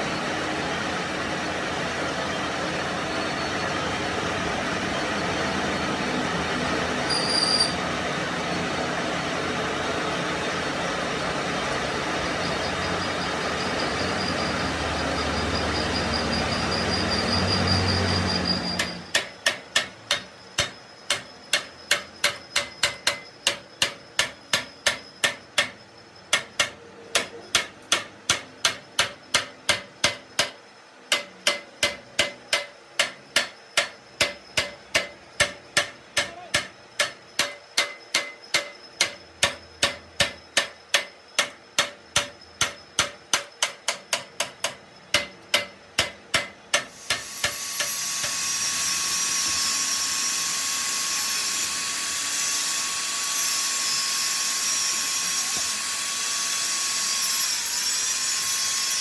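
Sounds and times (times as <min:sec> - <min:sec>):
machine running steadily: 0:00.0 - 0:59.0
hammer striking metal: 0:18.8 - 0:48.4.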